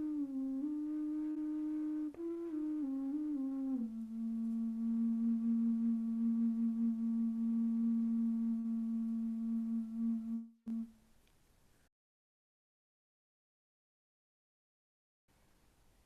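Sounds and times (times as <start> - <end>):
flute playing: 0.0 - 11.0.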